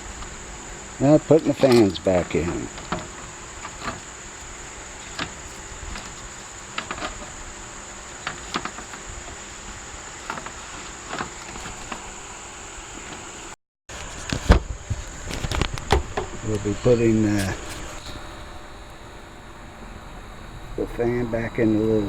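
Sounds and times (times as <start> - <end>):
light knocks and clicks of handling: 1.5 - 7.6, 8.2 - 12.1
high-pitched insect drone: 15.8 - 22.0.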